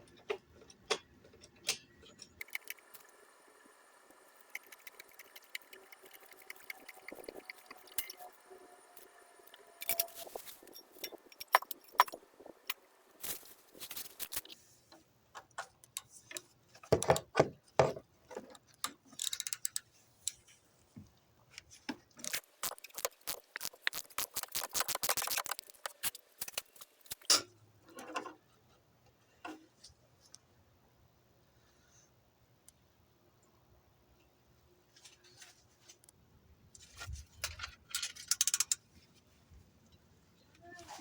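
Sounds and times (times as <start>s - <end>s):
objects clicking and rattling: 0.0s - 3.1s, 4.1s - 14.6s, 22.2s - 27.5s.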